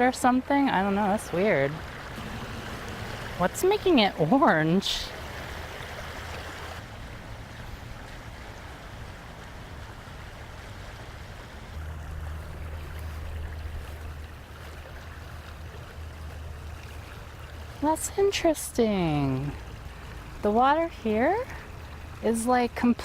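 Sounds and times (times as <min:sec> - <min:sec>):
water rushing over rock: 0:01.2 - 0:07.0
low rumble: 0:02.1 - 0:05.7.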